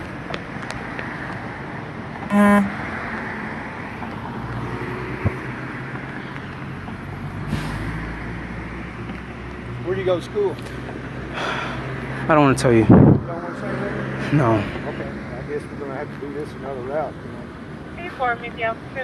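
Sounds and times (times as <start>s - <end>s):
road traffic: 0.0s - 19.0s
vehicle passing: 0.0s - 19.0s
car horn toot: 2.3s - 3.0s.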